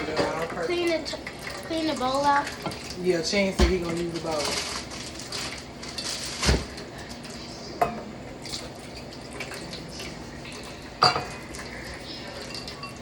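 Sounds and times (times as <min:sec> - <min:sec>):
dishes and utensils clinking: 0:00.0 - 0:00.9, 0:05.3 - 0:13.0.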